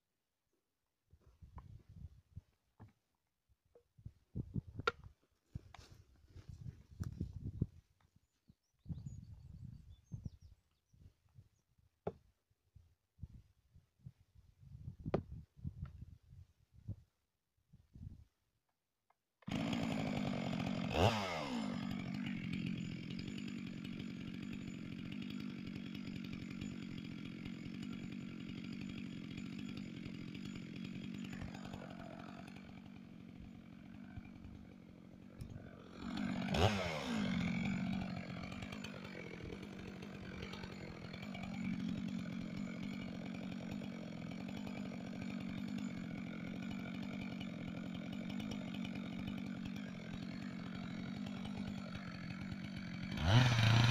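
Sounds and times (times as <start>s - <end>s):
chainsaw engine running: 19.5s - 53.9s.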